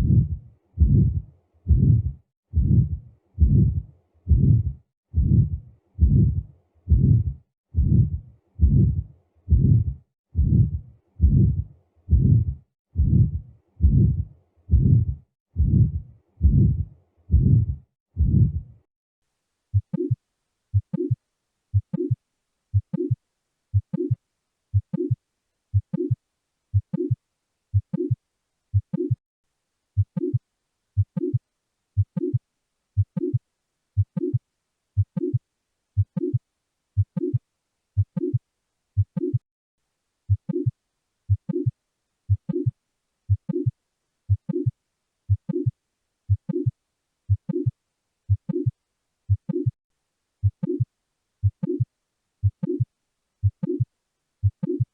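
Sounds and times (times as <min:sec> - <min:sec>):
heartbeat lub-dub: 0:00.0 - 0:18.8, 0:19.7 - 0:29.2, 0:30.0 - 0:30.4, 0:31.0 - 0:31.4, 0:32.0 - 0:32.4, 0:33.0 - 0:33.4, 0:34.0 - 0:34.4, 0:35.0 - 0:35.4, 0:36.0 - 0:36.4, 0:37.0 - 0:37.4, 0:38.0 - 0:38.4, 0:39.0 - 0:39.4, 0:40.3 - 0:40.7, 0:41.3 - 0:41.7, 0:42.3 - 0:42.7, 0:43.3 - 0:43.7, 0:44.3 - 0:44.7, 0:45.3 - 0:45.7, 0:46.3 - 0:46.7, 0:47.3 - 0:47.7, 0:48.3 - 0:48.7, 0:49.3 - 0:49.8, 0:50.4 - 0:54.9.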